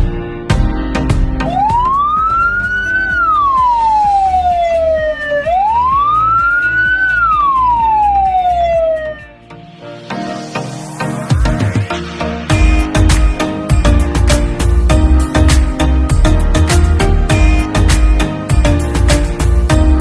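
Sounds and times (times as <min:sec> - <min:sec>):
background music: 0:00.0 - 0:20.0
ambulance siren wailing: 0:01.4 - 0:09.4.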